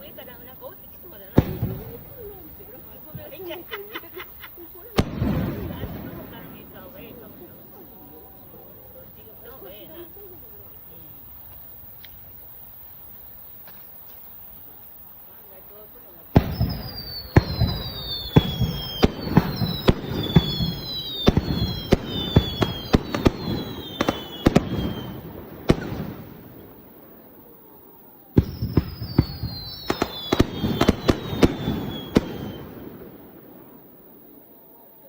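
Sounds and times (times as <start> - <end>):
fireworks bangs: 0.0 - 35.0
firework whistles falling in pitch: 1.2 - 10.0, 16.3 - 34.1.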